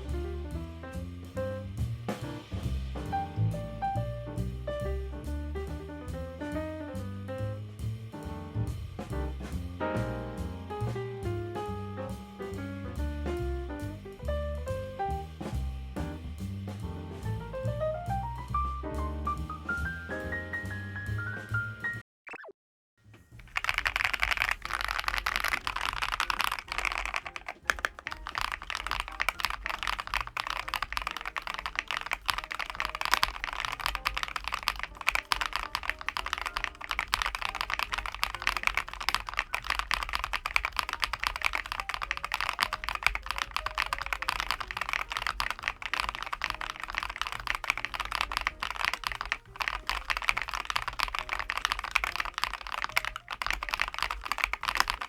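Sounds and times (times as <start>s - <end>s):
mechanical keyboard typing: 23.2s - 55.0s.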